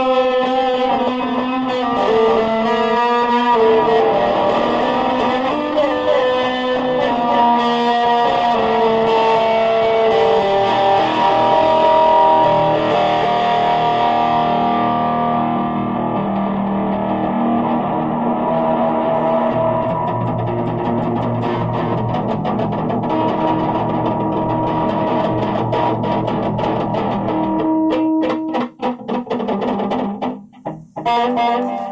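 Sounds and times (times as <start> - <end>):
guitar melody: 0.0 - 31.9.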